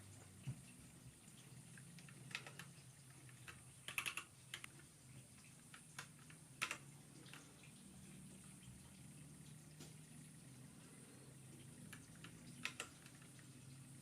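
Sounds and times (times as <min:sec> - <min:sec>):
keyboard keystrokes: 0:03.4 - 0:04.7.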